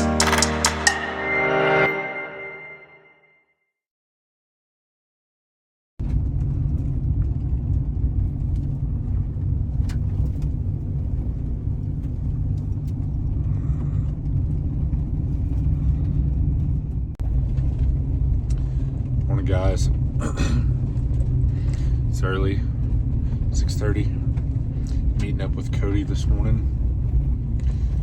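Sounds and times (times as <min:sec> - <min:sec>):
vehicle driving rumble: 0:06.0 - 0:28.0.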